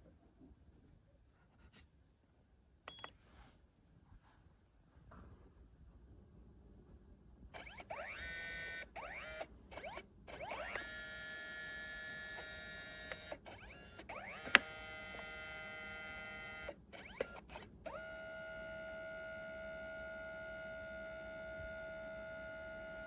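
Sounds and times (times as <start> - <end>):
sharp printer clicks: 7.6 - 18.3
printer feed motor whining: 7.6 - 23.0.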